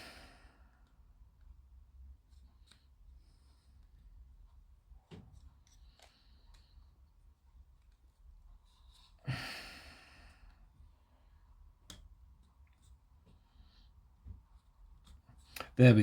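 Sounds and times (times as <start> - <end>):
faint plastic clicks: 5.0 - 6.9
person sighing: 9.3 - 10.2.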